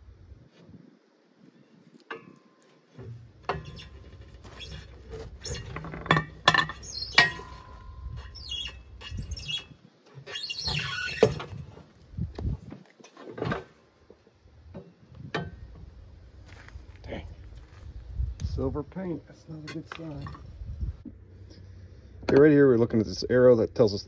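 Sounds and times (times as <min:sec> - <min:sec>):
rubber tire bead squeaking: 0:03.4 - 0:11.8
metal tire levers clinking: 0:05.5 - 0:08.4.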